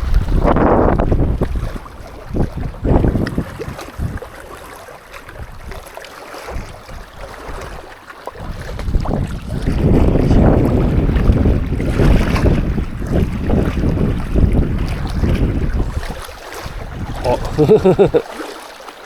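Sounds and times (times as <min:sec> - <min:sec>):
gusty wind buffeting microphone: 0:00.0 - 0:04.4, 0:08.4 - 0:18.1.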